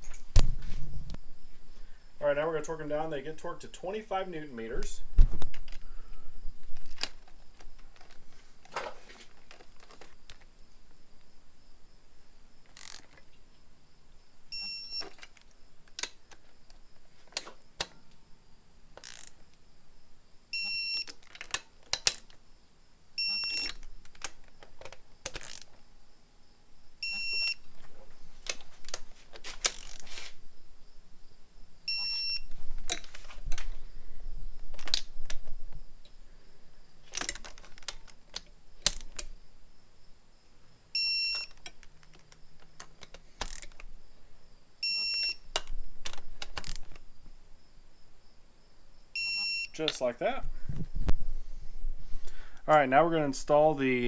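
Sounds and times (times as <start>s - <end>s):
torque wrench ratcheting: 12.7s - 13.1s, 19.0s - 19.4s, 25.3s - 25.7s
short electronic beeps: 14.5s - 15.1s, 20.5s - 21.1s, 23.2s - 23.7s, 27.0s - 27.6s, 31.9s - 32.5s, 41.0s - 41.5s, 44.8s - 45.4s, 49.2s - 49.8s.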